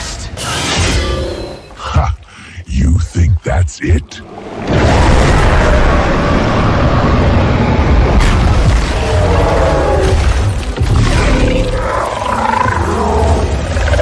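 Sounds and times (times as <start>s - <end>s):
deep booming rumble: 4.6s - 11.8s.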